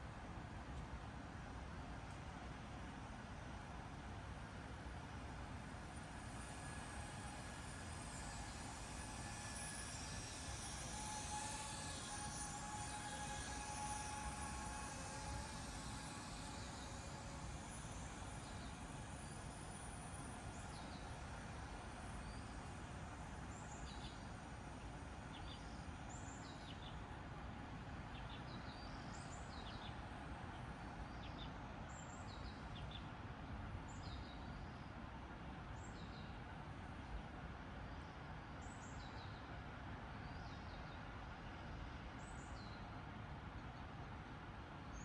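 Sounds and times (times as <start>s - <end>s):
outdoor background hum: 0.0s - 45.0s.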